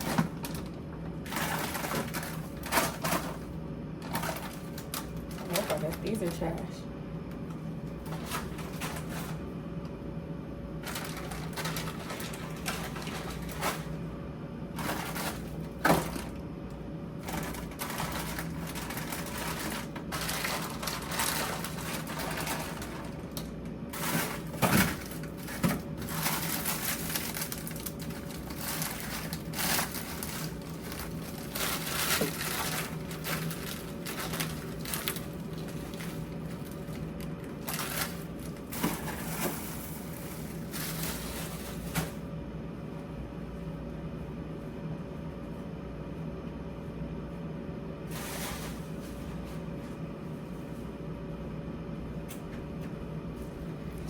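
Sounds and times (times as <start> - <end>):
items knocking and clattering: 0.0 - 6.1, 14.8 - 16.4, 23.9 - 37.0
plastic wrapping rustling: 0.0 - 6.6, 10.8 - 14.0, 17.2 - 42.3
steady low hum: 0.0 - 54.0.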